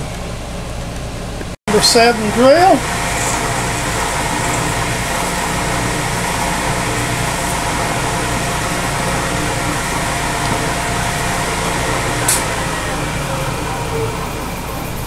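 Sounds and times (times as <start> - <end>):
milling machine humming: 0.0 - 15.0.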